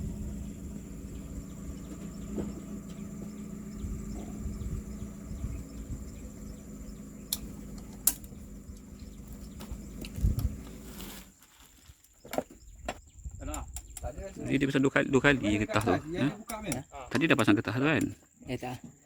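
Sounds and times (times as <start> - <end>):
low machine hum: 0.0 - 11.1
high insect drone: 0.0 - 11.7.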